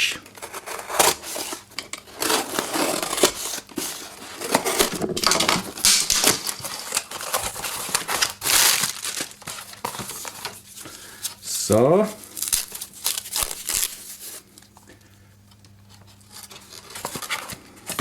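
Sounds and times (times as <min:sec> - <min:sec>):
package wrapping tearing: 0:00.4 - 0:10.6, 0:12.2 - 0:14.4.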